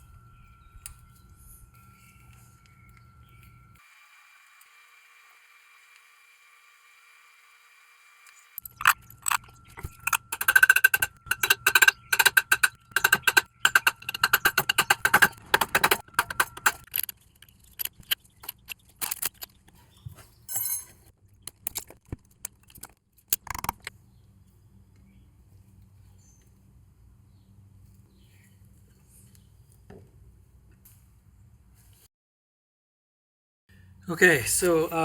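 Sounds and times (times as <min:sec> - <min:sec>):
steel parts clicking and rattling: 0:08.6 - 0:19.8, 0:20.5 - 0:23.9.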